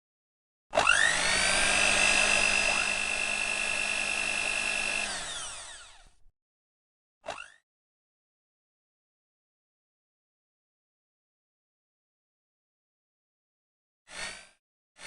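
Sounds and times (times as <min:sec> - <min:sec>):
electric blender motor whining: 0:00.7 - 0:06.3, 0:07.2 - 0:07.6, 0:14.1 - 0:14.6.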